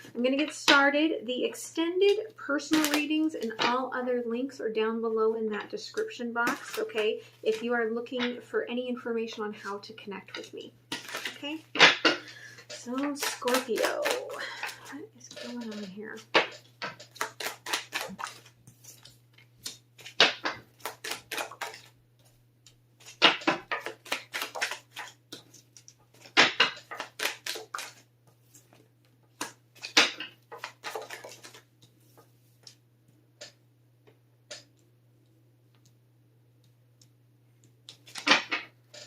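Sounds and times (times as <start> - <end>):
cards being shuffled: 2.1 - 3.8, 6.0 - 7.7, 10.3 - 22.4, 23.0 - 32.8, 37.8 - 39.0.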